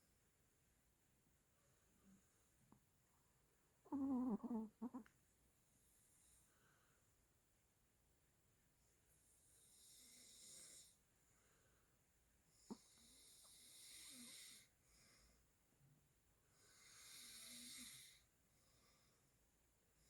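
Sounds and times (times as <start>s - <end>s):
dog snoring: 3.9s - 5.1s, 9.6s - 10.9s, 12.6s - 14.7s, 16.7s - 18.2s.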